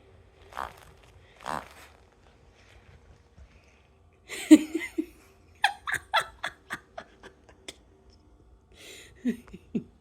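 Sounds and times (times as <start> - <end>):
person laughing: 4.3 - 7.8, 9.2 - 10.0.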